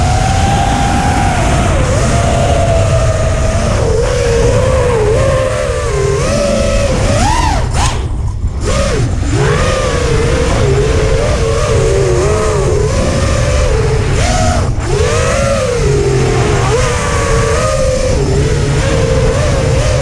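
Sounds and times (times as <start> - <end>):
low rumble: 0.0 - 20.0
quadcopter motors whining: 0.0 - 20.0.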